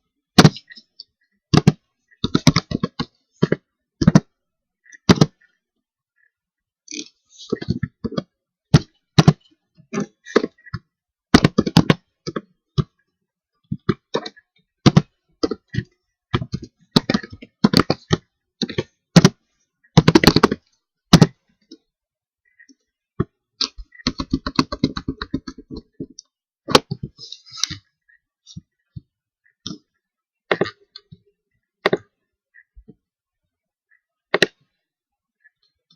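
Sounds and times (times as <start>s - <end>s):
computer keyboard typing: 23.6s - 26.2s.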